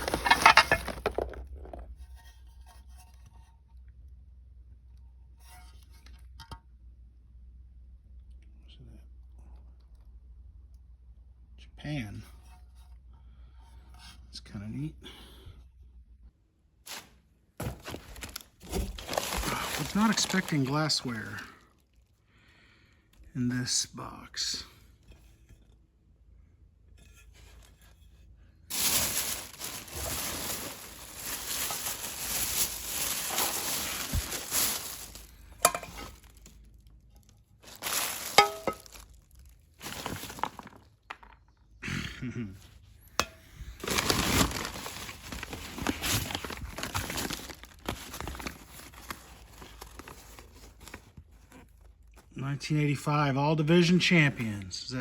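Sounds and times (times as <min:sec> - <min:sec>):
packing paper crumpling: 0:00.0 - 0:01.8, 0:17.8 - 0:21.6, 0:28.7 - 0:36.5, 0:37.6 - 0:40.8, 0:43.8 - 0:51.9
glass clinking: 0:38.3 - 0:39.0.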